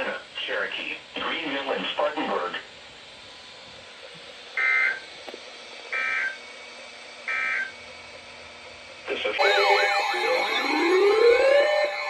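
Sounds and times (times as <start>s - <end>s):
warbling digital data tones: 9.4s - 12.0s.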